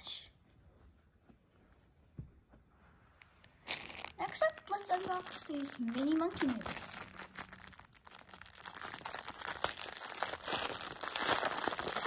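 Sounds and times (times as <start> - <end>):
plastic packaging crinkling and tearing: 3.6 - 12.0.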